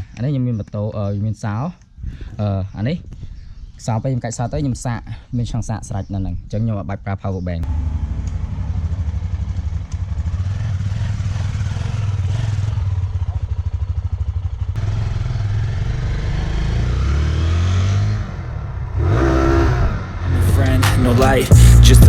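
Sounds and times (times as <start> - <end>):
dirt bike engine running: 7.6 - 16.5.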